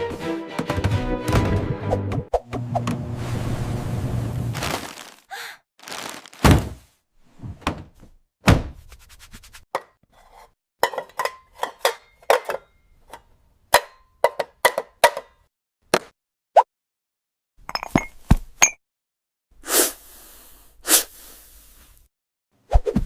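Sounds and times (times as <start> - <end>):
heavy thuds of objects: 6.3 - 6.9.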